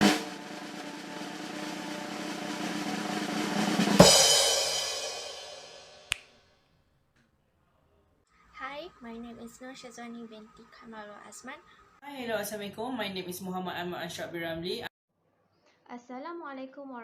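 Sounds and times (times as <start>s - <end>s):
drum roll: 0.0s - 6.0s
cymbal crash: 0.0s - 6.1s.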